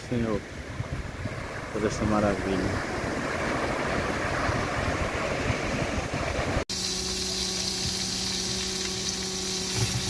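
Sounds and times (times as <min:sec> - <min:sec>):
wind and surf noise: 0:00.0 - 0:10.0
low electrical hum: 0:06.4 - 0:10.0
steady high hiss: 0:06.7 - 0:10.0.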